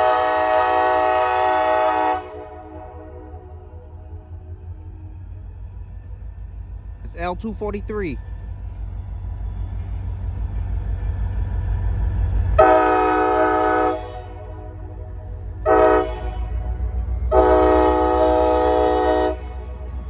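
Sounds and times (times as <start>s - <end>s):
locomotive horn blasts: 0.0s - 3.2s, 12.6s - 20.0s
steady low rumble: 2.3s - 20.0s.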